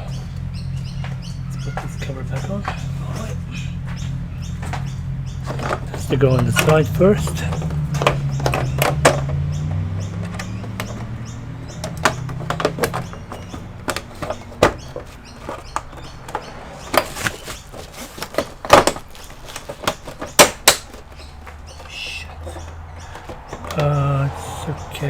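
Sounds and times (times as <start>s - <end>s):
plastic clips snapping in: 10.1s - 23.8s.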